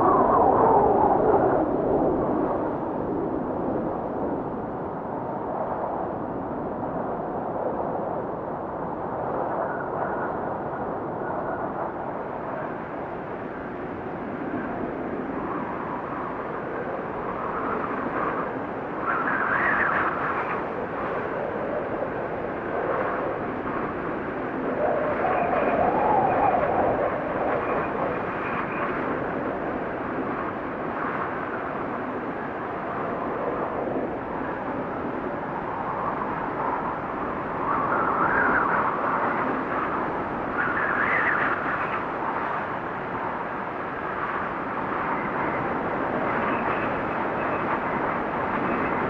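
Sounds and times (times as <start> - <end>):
wind blowing: 0.0 - 49.0.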